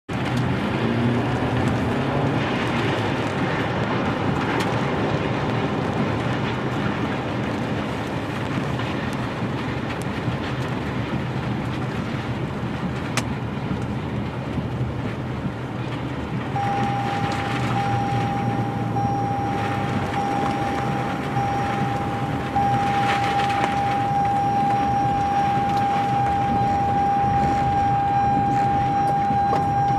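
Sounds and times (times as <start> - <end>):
dense wind noise: 0.1 - 29.9
low rumble: 0.1 - 29.9
steady high single-pitch tone: 16.6 - 29.9.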